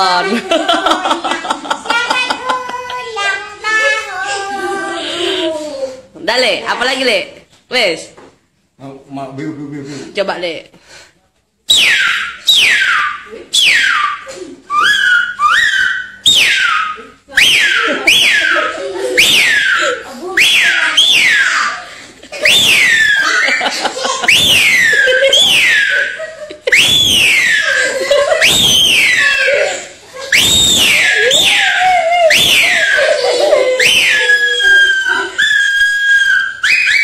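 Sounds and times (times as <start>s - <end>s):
people laughing: 0.2s - 3.1s, 17.7s - 20.2s, 21.8s - 30.4s, 31.1s - 35.6s
man whistling descending notes: 11.7s - 18.6s, 24.3s - 26.0s, 26.7s - 27.7s, 28.4s - 29.4s, 30.3s - 33.0s, 33.8s - 37.0s.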